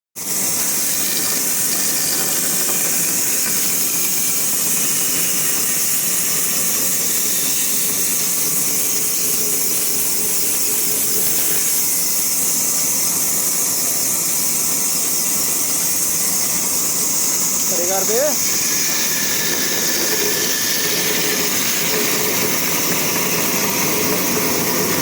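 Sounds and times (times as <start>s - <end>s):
power saw whine cutting wood: 0.2s - 25.0s.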